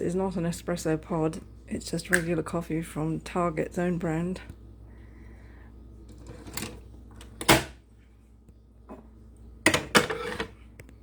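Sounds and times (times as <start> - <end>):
coffee machine clicks and clunks: 9.7 - 10.5.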